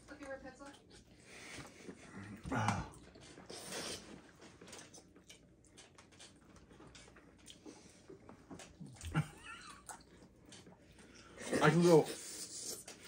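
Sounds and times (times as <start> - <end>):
low grunt: 2.2 - 3.1.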